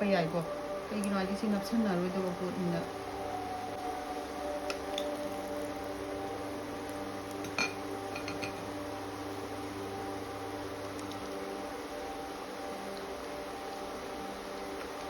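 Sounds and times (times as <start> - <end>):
batter frying in hot oil: 0.0 - 15.0
steady hum: 0.0 - 15.0
metal utensil clinking on pan: 7.4 - 8.6.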